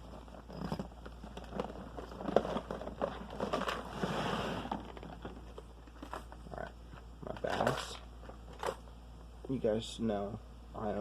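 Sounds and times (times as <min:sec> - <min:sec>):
rustling stretch: 0:03.7 - 0:04.9.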